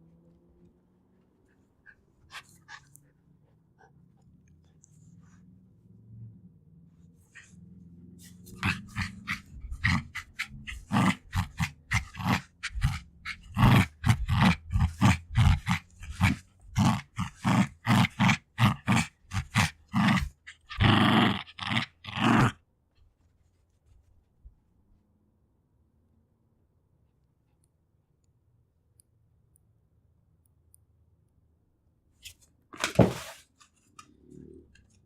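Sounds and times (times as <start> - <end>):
dog growling: 8.3 - 22.6.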